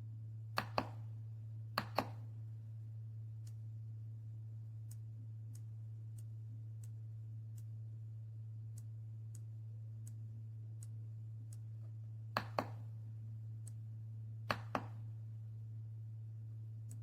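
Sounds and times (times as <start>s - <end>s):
steady low hum: 0.0s - 17.0s
faint light ticks: 3.4s - 3.7s, 4.6s - 12.9s, 13.6s - 13.9s, 16.8s - 17.0s.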